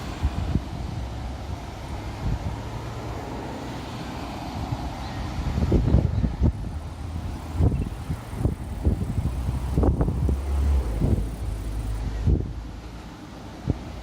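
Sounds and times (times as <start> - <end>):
train rumbling past: 6.1 - 12.2.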